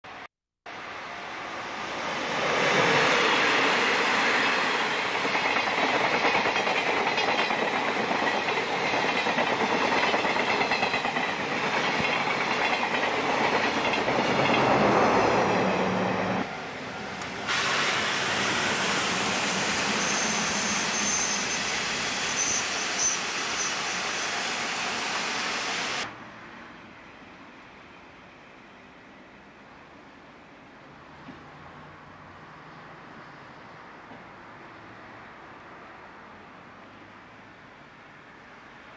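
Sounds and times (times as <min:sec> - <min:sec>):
train wheels clattering on rails: 0:02.7 - 0:15.9
high squeal: 0:17.6 - 0:25.7.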